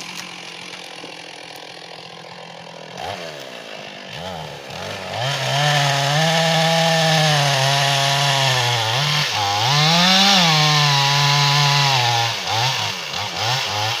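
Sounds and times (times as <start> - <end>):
chainsaw running at high revs: 0.0 - 14.0.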